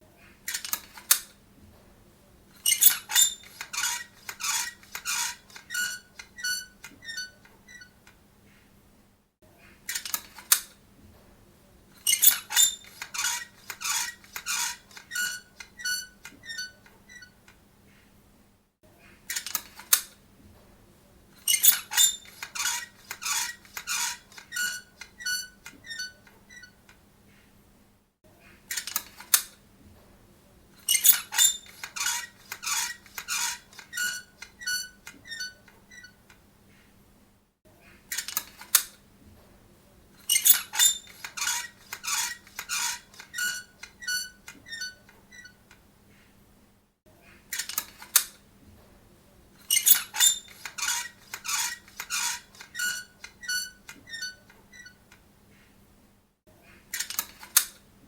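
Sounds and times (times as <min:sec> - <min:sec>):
metal door hinges creaking: 0:02.6 - 0:07.9, 0:12.0 - 0:17.2, 0:21.4 - 0:26.7, 0:30.9 - 0:36.2, 0:40.2 - 0:45.5, 0:49.6 - 0:54.9.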